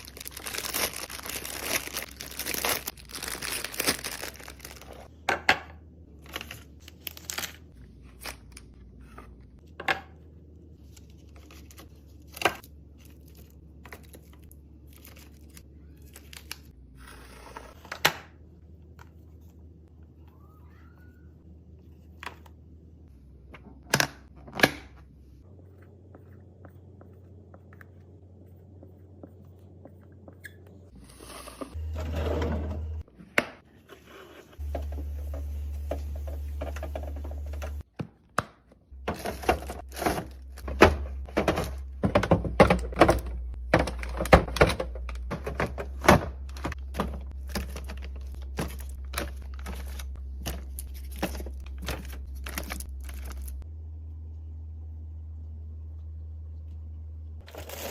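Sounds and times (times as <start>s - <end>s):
containers knocking in a fridge: 40.7s - 47.3s.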